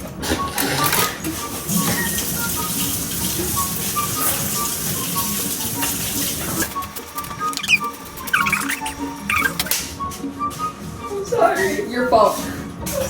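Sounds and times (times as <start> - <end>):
kitchen tap running: 0.2 - 9.9.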